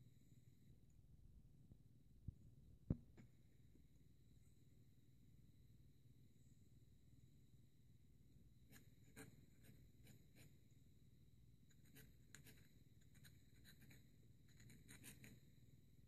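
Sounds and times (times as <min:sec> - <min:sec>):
pen nib scratching paper: 0:08.7 - 0:10.7, 0:11.7 - 0:15.6.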